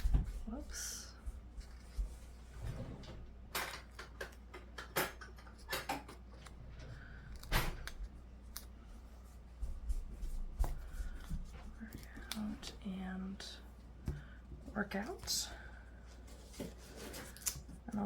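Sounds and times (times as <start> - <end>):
stickers peeling and tapping: 3.7 - 8.8.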